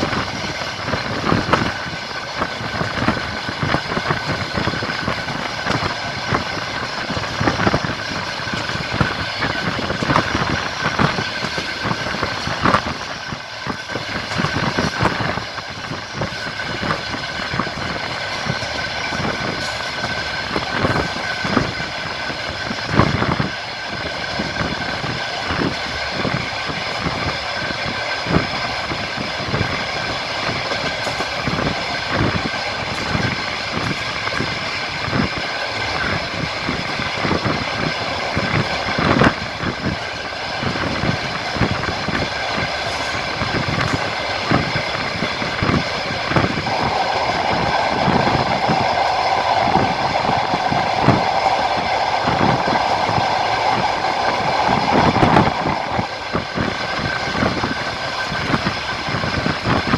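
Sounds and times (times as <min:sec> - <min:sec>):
steady hum: 0:00.0 - 0:59.9
train running rumble: 0:00.0 - 0:59.9
train wheels clicking over rail joints: 0:00.0 - 0:59.9.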